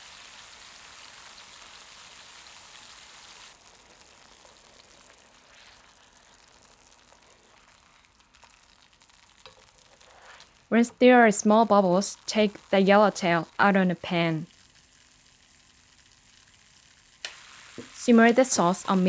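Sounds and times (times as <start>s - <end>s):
sauce bubbling in a frying pan: 0.0s - 19.0s.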